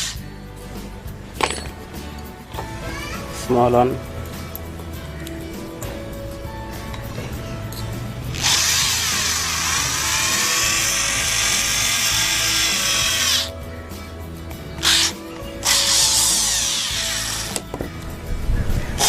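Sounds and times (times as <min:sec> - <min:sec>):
background music: 0:00.0 - 0:19.0
power drill whining: 0:07.7 - 0:13.5, 0:14.8 - 0:17.8.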